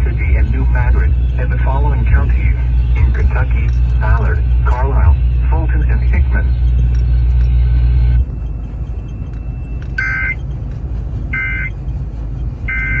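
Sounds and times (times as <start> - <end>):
radio background noise: 0.0 - 9.1
steady hum: 0.0 - 13.0.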